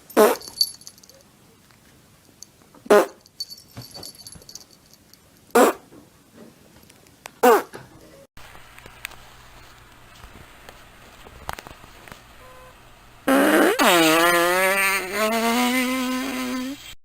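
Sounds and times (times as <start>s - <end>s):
long loud fart: 0.2s - 0.5s, 2.9s - 3.2s, 5.6s - 5.8s, 13.3s - 16.9s.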